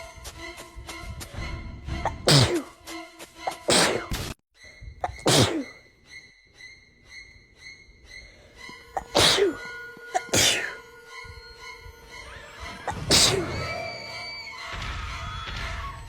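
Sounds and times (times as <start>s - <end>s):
background music: 0.0s - 16.0s
person sneezing: 2.1s - 2.7s, 3.5s - 4.2s, 5.0s - 5.8s, 9.0s - 10.8s, 12.9s - 13.6s.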